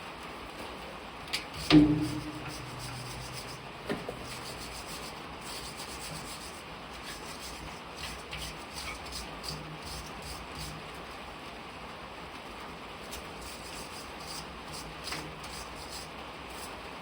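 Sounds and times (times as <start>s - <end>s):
light metal taps: 1.3s - 4.9s
steady hiss: 1.4s - 17.0s
sharp metal knock: 1.6s - 4.9s.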